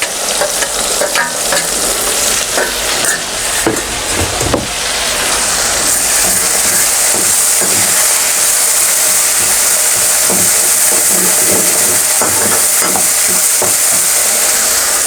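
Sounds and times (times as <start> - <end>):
paste sizzling in hot oil: 0.0 - 15.0
stirring knocks: 0.4 - 8.5.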